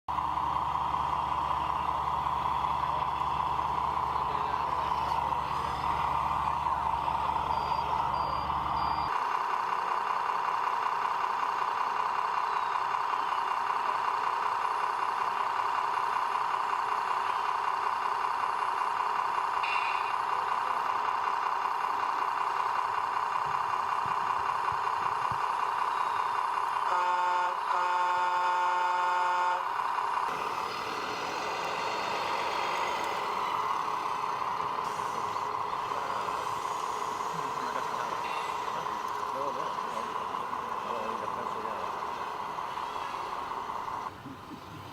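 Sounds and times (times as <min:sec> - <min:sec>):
model truck motor whine: 0:00.1 - 0:09.2, 0:23.0 - 0:44.9
reversing beeper: 0:00.2 - 0:09.2, 0:19.6 - 0:20.3, 0:25.8 - 0:29.6, 0:30.3 - 0:44.1.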